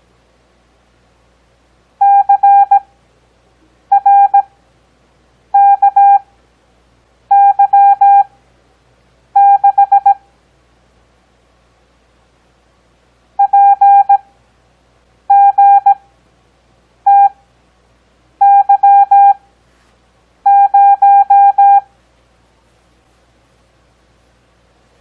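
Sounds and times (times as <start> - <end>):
morse code beeps: 2.0 - 2.8, 3.9 - 4.5, 5.6 - 6.2, 7.3 - 8.3, 9.4 - 10.2, 13.4 - 14.2, 15.3 - 16.0, 17.1 - 17.4, 18.4 - 19.4, 20.4 - 21.9.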